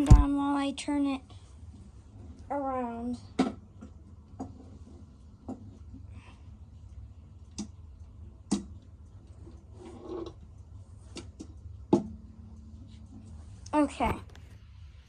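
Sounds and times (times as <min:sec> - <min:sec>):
low steady hum: 0:00.0 - 0:09.8.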